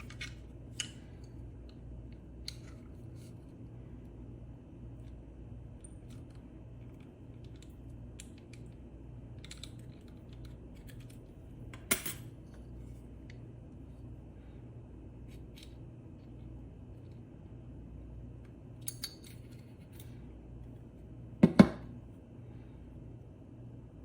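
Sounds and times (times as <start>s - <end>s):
steady low hum: 0.0s - 24.0s
clicks and metallic clinks of tools: 18.8s - 20.1s.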